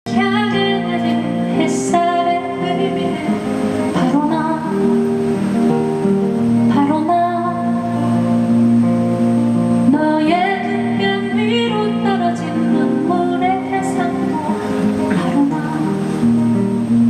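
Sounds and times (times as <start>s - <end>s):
person singing: 0.1s - 5.1s, 9.9s - 16.4s
plucked guitar: 0.1s - 17.0s.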